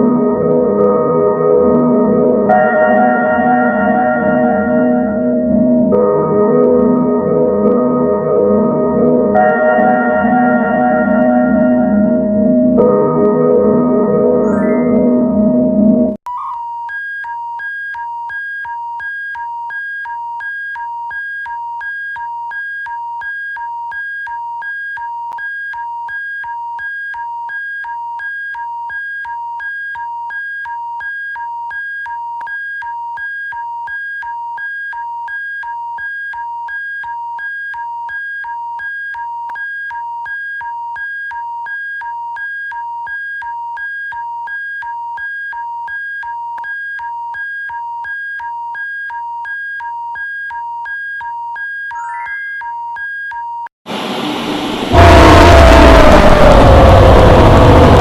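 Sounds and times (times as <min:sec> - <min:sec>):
pulsing alert tone: 0:00.0 - 0:16.2.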